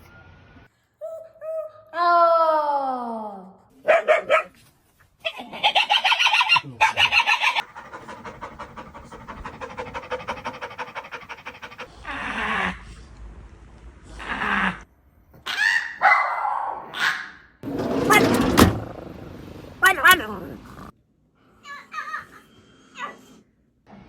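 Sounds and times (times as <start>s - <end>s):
dog stuttering vocal pulses: 7.0s - 12.1s
dog falling cry: 7.6s - 11.9s.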